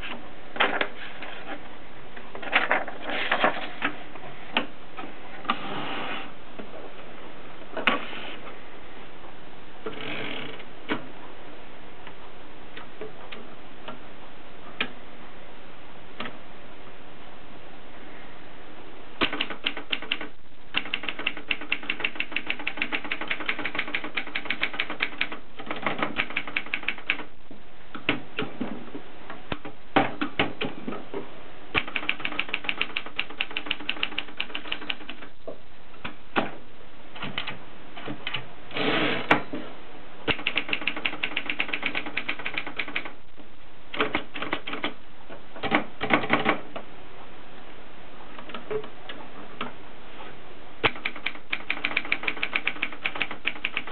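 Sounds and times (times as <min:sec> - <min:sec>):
typewriter keystrokes: 0:19.2 - 0:27.3, 0:31.8 - 0:35.2, 0:40.3 - 0:43.2, 0:44.0 - 0:45.0, 0:50.8 - 0:53.9.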